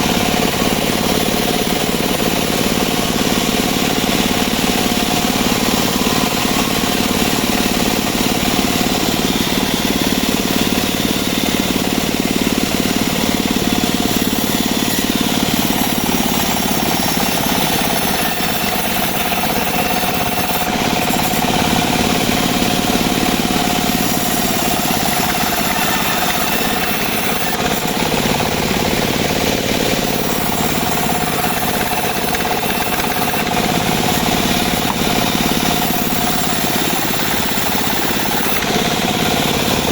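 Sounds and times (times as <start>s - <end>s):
band sawmill engine running: 0.0s - 39.9s
saw blade whine: 0.0s - 39.9s.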